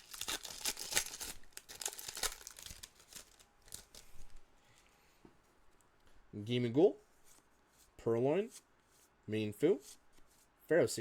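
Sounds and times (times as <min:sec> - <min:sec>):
foil wrapper tearing and crinkling: 0:00.0 - 0:04.0.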